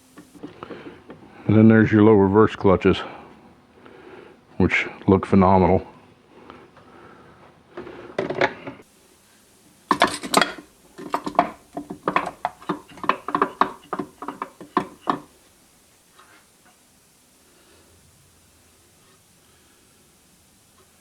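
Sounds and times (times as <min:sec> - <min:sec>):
metal clutch plates clinking: 0:09.9 - 0:15.3.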